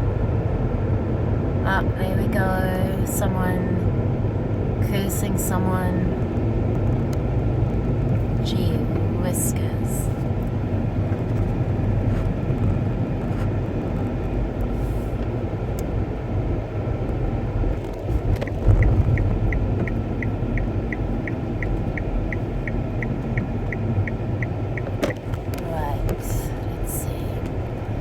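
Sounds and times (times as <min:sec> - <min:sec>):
car road rumble: 0:00.0 - 0:28.0
turn indicator ticking: 0:18.2 - 0:28.0.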